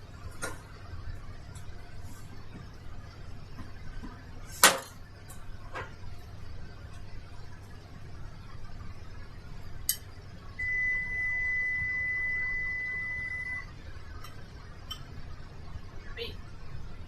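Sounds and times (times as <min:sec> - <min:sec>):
long high electronic beep: 0:10.6 - 0:13.7.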